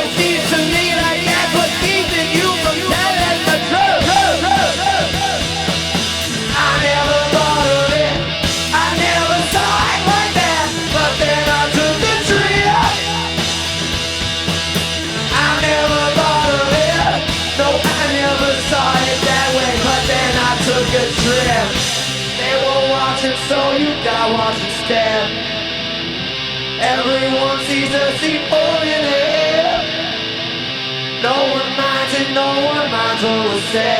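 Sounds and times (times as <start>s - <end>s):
rock band playing live: 0.0s - 33.9s.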